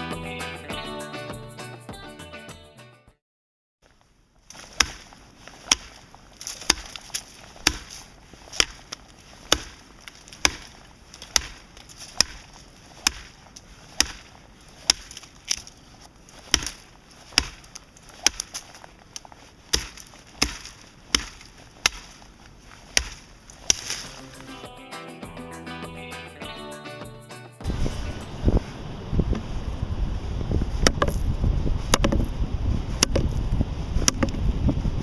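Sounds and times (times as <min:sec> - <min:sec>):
blade chopping into wood: 0:04.5 - 0:05.1, 0:05.7 - 0:15.6, 0:16.4 - 0:18.6, 0:19.7 - 0:22.2, 0:22.9 - 0:24.1, 0:30.8 - 0:31.2, 0:33.0 - 0:33.3, 0:34.0 - 0:34.4.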